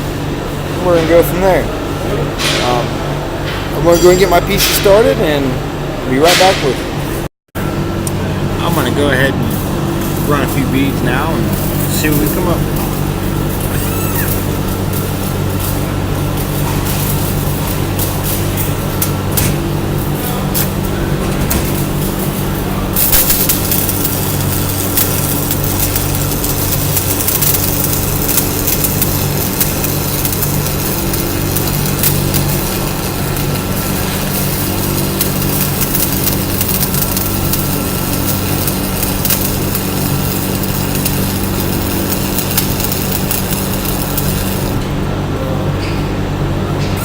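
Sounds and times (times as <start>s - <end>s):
steady hum: 0.0s - 47.0s
welding arc crackling: 7.9s - 45.2s.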